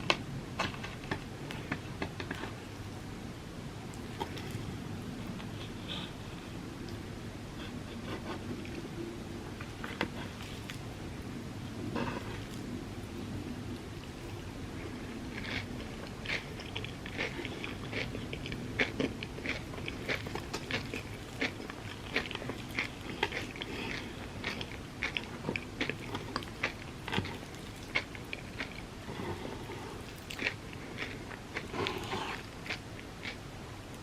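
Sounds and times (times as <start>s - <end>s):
crunchy crackles of food: 3.8s - 6.2s, 8.2s - 34.0s
person chewing: 3.9s - 7.0s, 11.9s - 33.4s.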